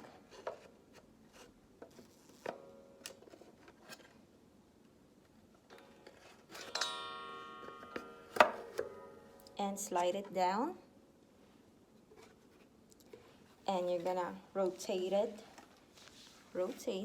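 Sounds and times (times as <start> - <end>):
ringing metallic sound: 6.7 - 9.7.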